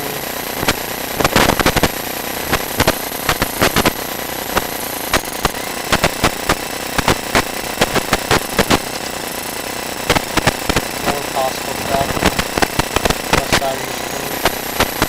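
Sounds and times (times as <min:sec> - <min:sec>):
sharp clicks and knocks: 0:00.0 - 0:15.0.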